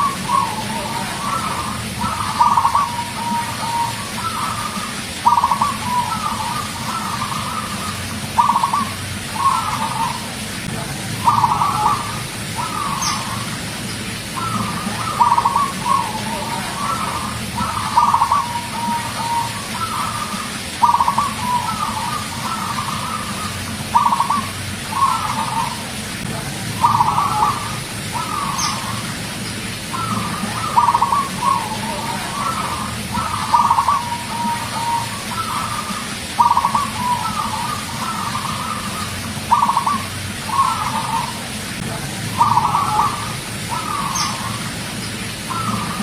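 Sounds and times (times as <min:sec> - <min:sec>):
dove cooing: 0:00.0 - 0:46.0.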